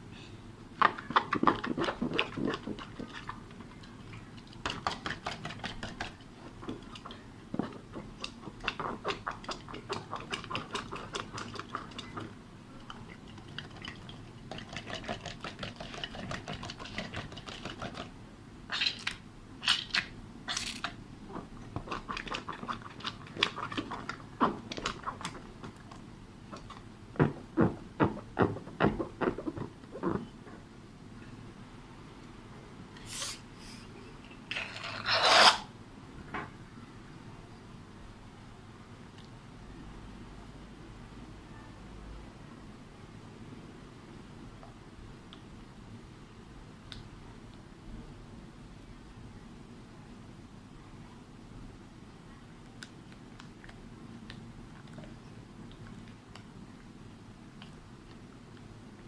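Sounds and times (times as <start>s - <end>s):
slime squelching by hand: 0.8s - 18.0s, 18.7s - 30.3s
short hissing puffs: 33.0s - 33.8s.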